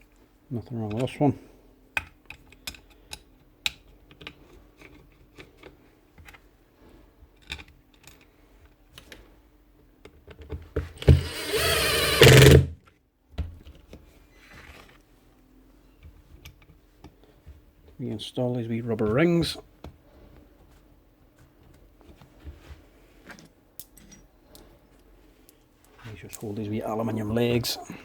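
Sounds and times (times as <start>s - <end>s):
small parts clicking and tapping: 2.0s - 6.4s, 7.4s - 9.2s
sander whirring: 11.0s - 12.7s.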